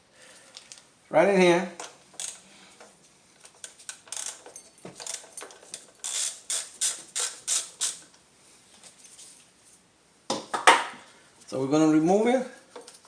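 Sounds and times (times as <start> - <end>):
ratchet wrench clicking: 2.2 - 2.4, 4.1 - 4.4, 6.0 - 8.0.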